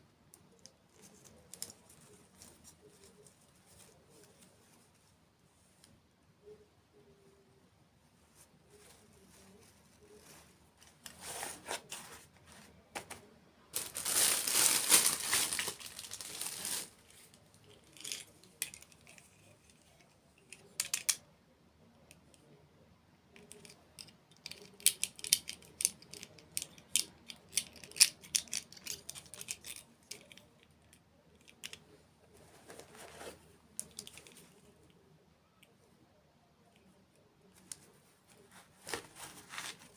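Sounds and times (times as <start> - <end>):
packaging crinkling and tearing: 13.8 - 17.0.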